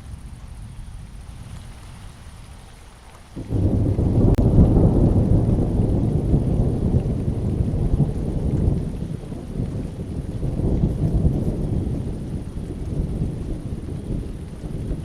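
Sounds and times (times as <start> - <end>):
rain: 0.0 - 15.0
thunder rumble: 3.3 - 15.0
thunder crack: 3.4 - 15.0.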